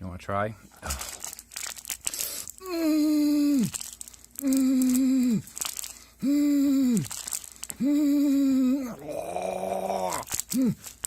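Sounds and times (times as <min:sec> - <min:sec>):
plastic package crinkling: 0:00.8 - 0:11.0
person grunting: 0:02.6 - 0:03.8, 0:04.4 - 0:05.5, 0:06.2 - 0:07.1, 0:07.8 - 0:10.8.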